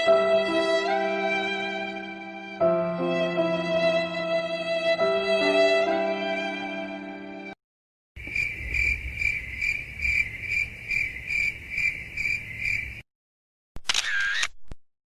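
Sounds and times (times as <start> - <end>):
sad violin music: 0.0 - 7.6
crickets chirping: 8.2 - 13.0.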